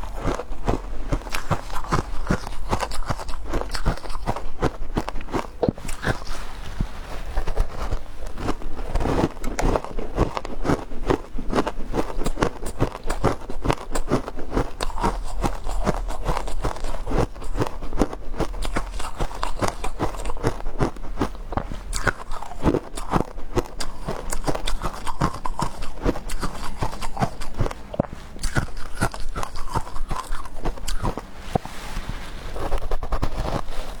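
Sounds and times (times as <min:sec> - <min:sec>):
ice crunching while chewed: 0:00.0 - 0:34.0.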